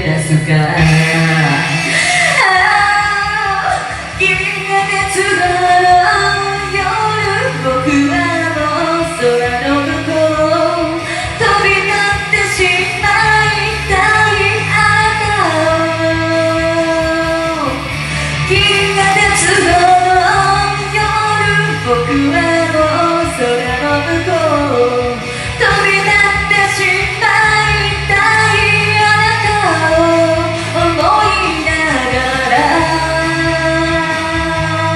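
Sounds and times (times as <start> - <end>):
person singing punk rock: 0.0 - 34.9
rock band backing track: 0.0 - 34.9.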